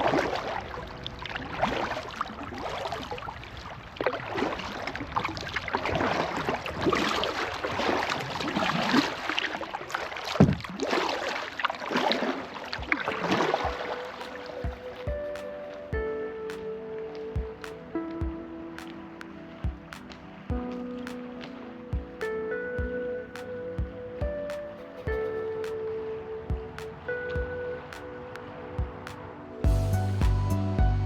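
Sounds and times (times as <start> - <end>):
paddle strokes splashing water: 0.0 - 15.9.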